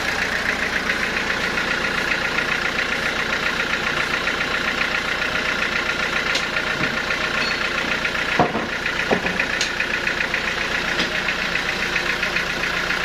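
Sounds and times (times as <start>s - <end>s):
sawmill machinery pulsing: 0.0s - 13.0s.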